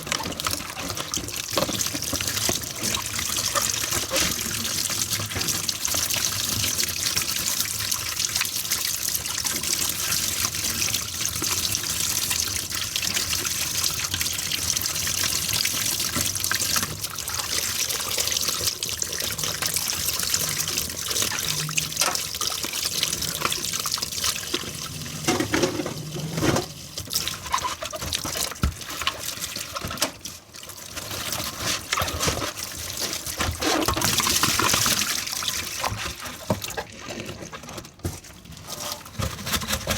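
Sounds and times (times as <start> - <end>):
tap water running into sink: 0.0 - 39.9
dishes knocking: 25.2 - 26.7.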